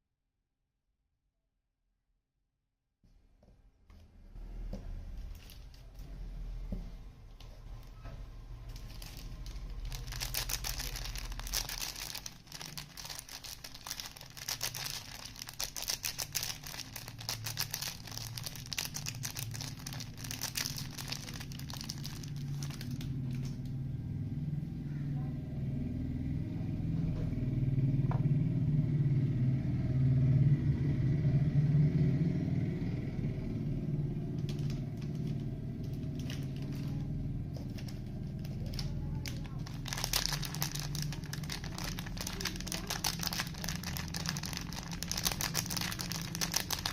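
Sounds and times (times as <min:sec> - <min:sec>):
low handling rumble: 0:04.2 - 0:31.3, 0:32.3 - 0:46.9
packaging crinkling: 0:08.6 - 0:23.6, 0:34.3 - 0:46.9.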